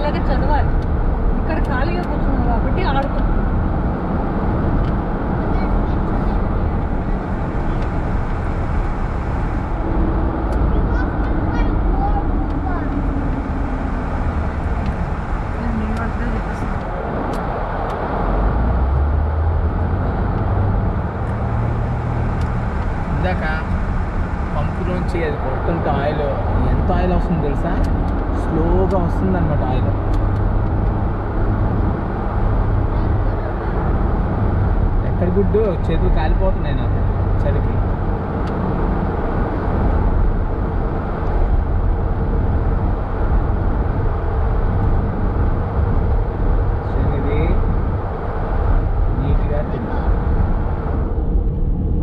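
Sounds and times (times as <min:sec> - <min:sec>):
car engine hum: 0:00.0 - 0:52.0
road noise: 0:00.0 - 0:52.0.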